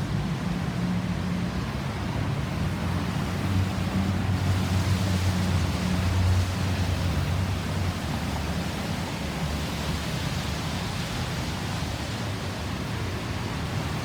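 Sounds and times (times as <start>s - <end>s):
rushing road traffic: 1.7s - 14.0s.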